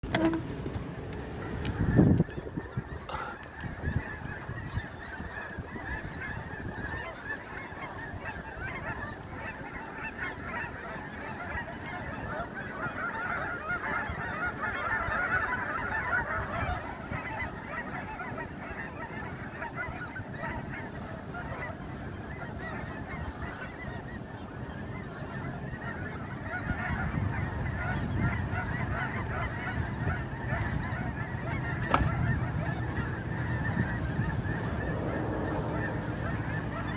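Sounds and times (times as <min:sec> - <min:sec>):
flock of birds calling: 0:00.0 - 0:36.9.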